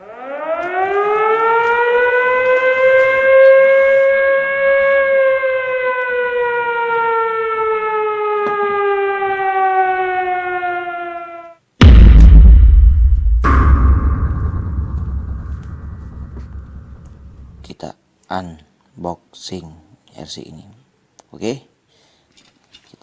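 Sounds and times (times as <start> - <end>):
civil defence siren wailing: 0.0 - 11.6.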